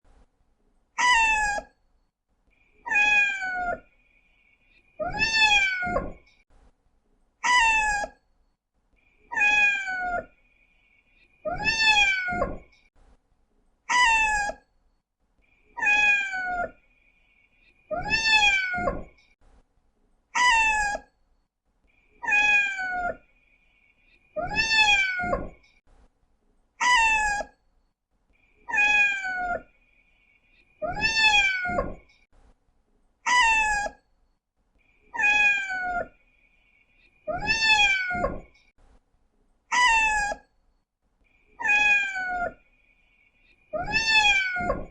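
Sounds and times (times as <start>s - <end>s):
cat meowing: 1.0s - 1.7s, 2.8s - 3.9s, 5.0s - 6.3s, 7.4s - 8.2s, 9.3s - 10.3s, 11.4s - 12.7s, 13.9s - 14.6s, 15.8s - 16.8s, 17.9s - 19.2s, 20.4s - 21.1s, 22.2s - 23.2s, 24.4s - 25.6s, 26.8s - 27.6s, 28.7s - 29.7s, 30.8s - 32.1s, 33.3s - 34.0s, 35.1s - 36.2s, 37.3s - 38.6s, 39.7s - 40.5s, 41.6s - 42.6s, 43.7s - 44.9s.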